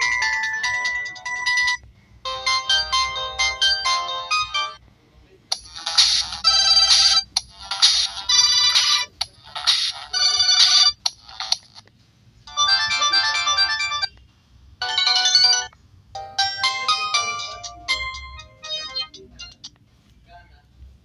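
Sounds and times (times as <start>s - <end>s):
electronic ringtone melodies: 0.0s - 4.8s, 12.5s - 14.1s, 14.8s - 19.6s.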